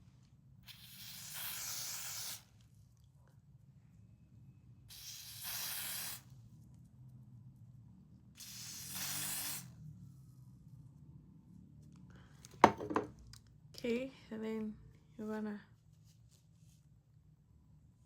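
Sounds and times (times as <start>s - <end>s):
aerosol spray hissing: 0.7s - 2.4s, 4.9s - 6.2s, 8.4s - 9.6s.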